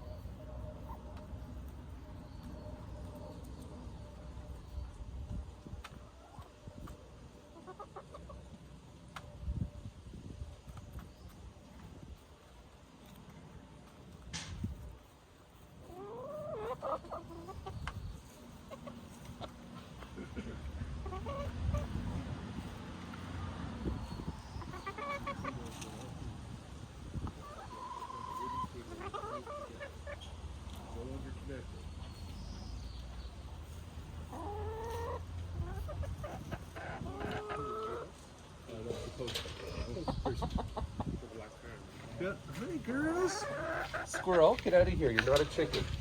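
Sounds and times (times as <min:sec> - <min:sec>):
hens clucking: 0:00.0 - 0:09.3, 0:10.6 - 0:46.0
hens calling: 0:05.8 - 0:08.6, 0:15.0 - 0:26.3, 0:26.9 - 0:46.0
hen calling: 0:34.3 - 0:38.1.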